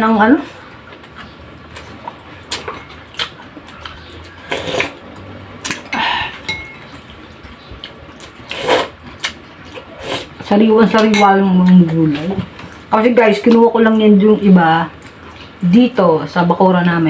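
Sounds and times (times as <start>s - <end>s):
cutlery clinking on plates: 5.8s - 7.0s.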